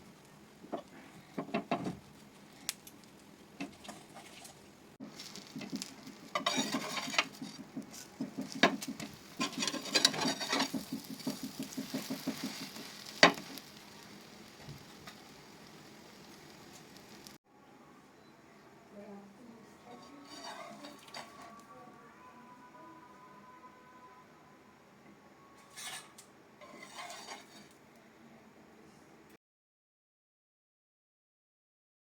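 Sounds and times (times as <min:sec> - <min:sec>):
food sizzling in a pan: 0:03.3 - 0:17.4, 0:19.8 - 0:21.7, 0:25.6 - 0:27.8
spatula scraping a pan: 0:03.6 - 0:15.6, 0:19.9 - 0:21.7, 0:25.6 - 0:27.8
sharp taps on a pan: 0:10.2 - 0:13.5.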